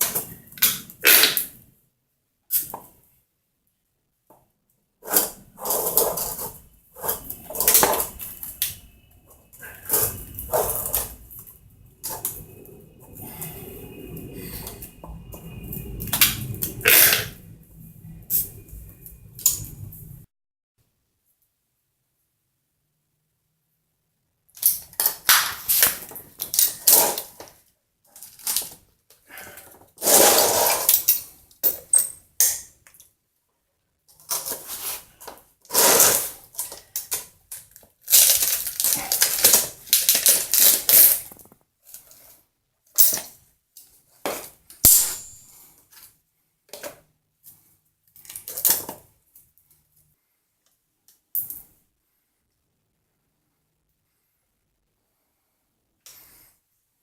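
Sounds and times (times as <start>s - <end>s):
hard objects clattering and scraping: 5.0s - 17.5s, 28.2s - 32.2s, 34.2s - 37.3s, 38.1s - 42.2s.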